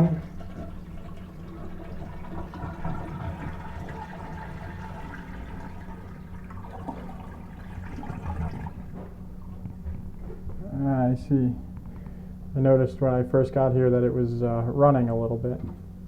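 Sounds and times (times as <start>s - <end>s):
toilet flushing: 0.0s - 9.6s.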